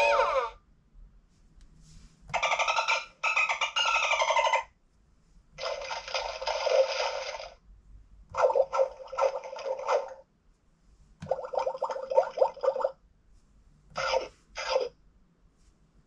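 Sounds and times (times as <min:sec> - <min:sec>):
electronic animal sound effects: 0:00.0 - 0:00.6, 0:05.6 - 0:07.6, 0:08.4 - 0:10.2, 0:14.0 - 0:14.9.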